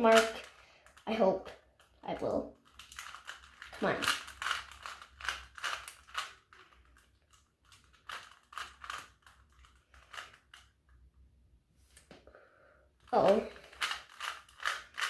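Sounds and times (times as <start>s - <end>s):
puzzle cube plastic clicking: 2.6s - 10.8s, 13.6s - 15.0s.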